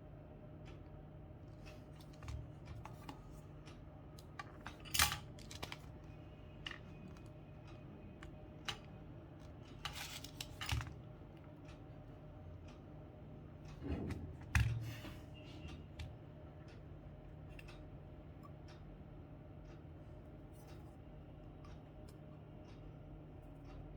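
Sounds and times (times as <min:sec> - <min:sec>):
scraping of calculator parts: 0:09.7 - 0:11.0.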